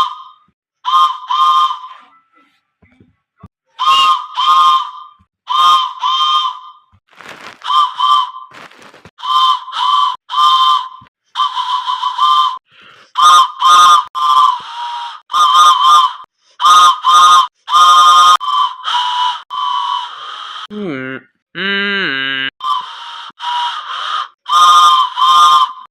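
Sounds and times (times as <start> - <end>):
whistle toots: 0.0 - 2.4, 3.7 - 20.7, 21.6 - 25.9.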